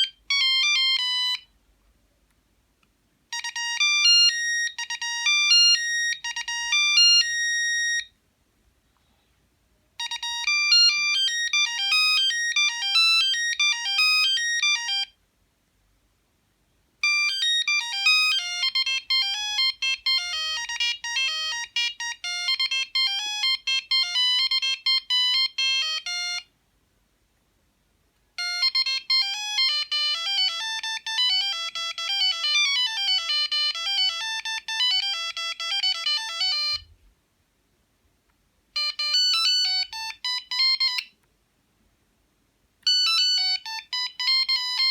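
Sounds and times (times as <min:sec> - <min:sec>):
mobile phone ringtone melodies: 0:00.0 - 0:01.6, 0:03.3 - 0:08.1, 0:10.0 - 0:15.2, 0:17.0 - 0:26.5, 0:28.4 - 0:37.0, 0:38.8 - 0:41.1, 0:42.9 - 0:44.9.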